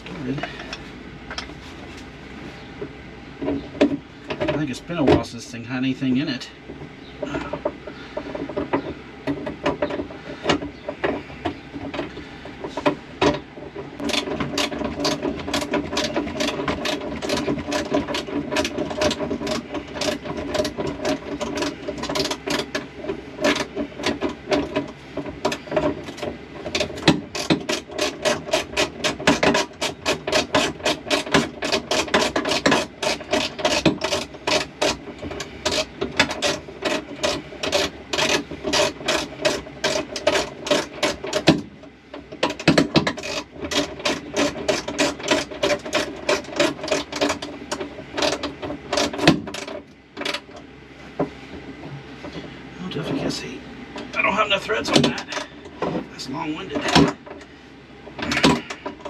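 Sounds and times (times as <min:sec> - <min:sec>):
hand ratchet clicking: 0:14.0 - 0:41.6, 0:42.2 - 0:50.4.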